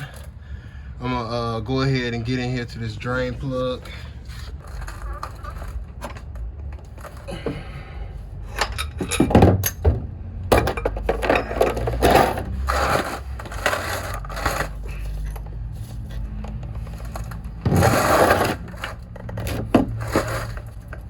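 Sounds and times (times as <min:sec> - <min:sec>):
metal hand tools clanking and scraping: 0:10.6 - 0:21.0.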